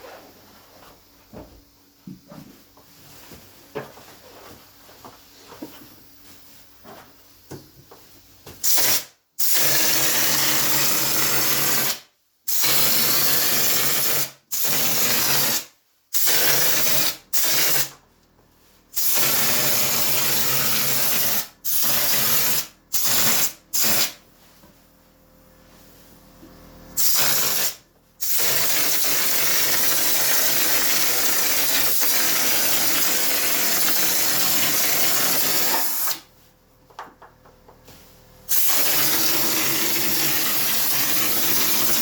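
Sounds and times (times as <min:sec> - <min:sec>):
spray gun hissing bursts: 0:19.0 - 0:24.2, 0:27.0 - 0:36.2, 0:38.5 - 0:42.0.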